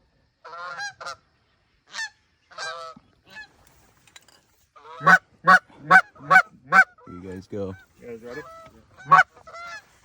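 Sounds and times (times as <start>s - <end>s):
geese honking: 0.4s - 1.3s, 1.9s - 3.5s, 4.8s - 10.0s.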